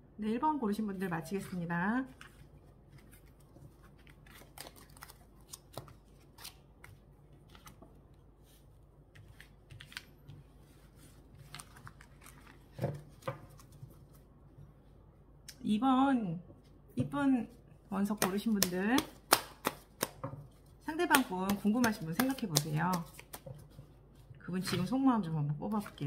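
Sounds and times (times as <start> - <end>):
cards shuffling: 18.2 - 23.9.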